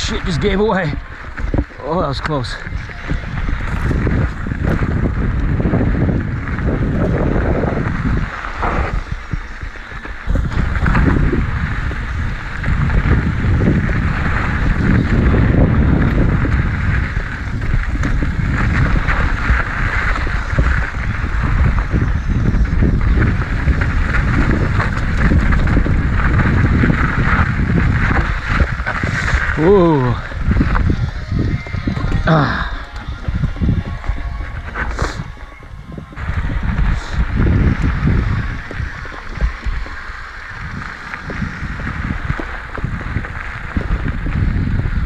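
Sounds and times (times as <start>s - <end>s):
bike rattling over bumps: 0.0s - 45.0s
bike tyres crunching on dirt: 0.0s - 45.0s
wind buffeting microphone: 0.0s - 45.0s.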